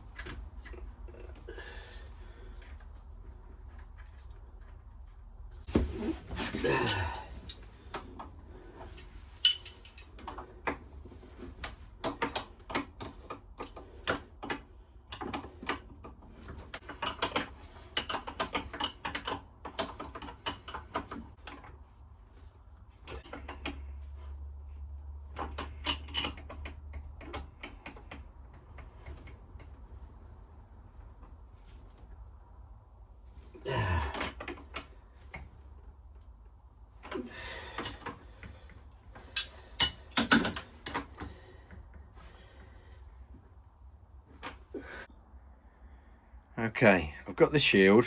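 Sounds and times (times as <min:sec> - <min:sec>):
metal parts clinking and rattling: 0:08.8 - 0:10.3, 0:39.2 - 0:41.1.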